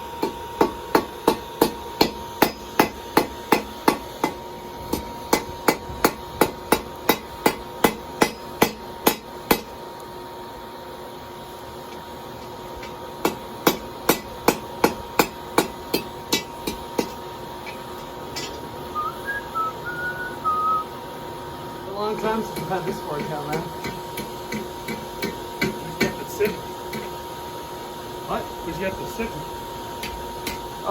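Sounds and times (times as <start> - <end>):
hammer striking steel on anvil: 0.2 - 9.7, 13.2 - 17.8, 22.2 - 27.1.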